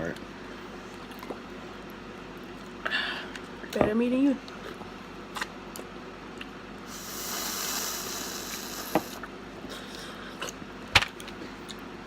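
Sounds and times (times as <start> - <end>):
wet hissing slurp: 6.9 - 9.2.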